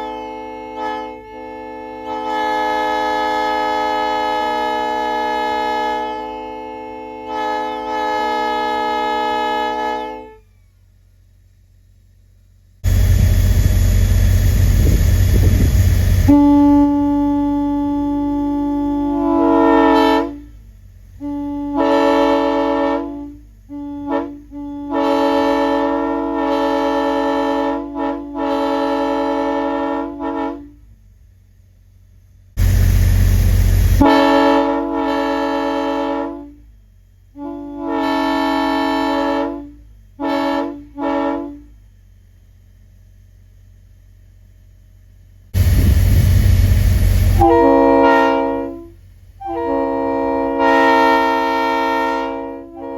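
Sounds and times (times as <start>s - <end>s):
locomotive air horn: 0.0s - 10.6s, 12.8s - 31.0s, 32.6s - 41.9s, 45.6s - 52.9s
loud rush of air: 12.8s - 16.4s, 32.6s - 34.1s, 45.6s - 47.8s.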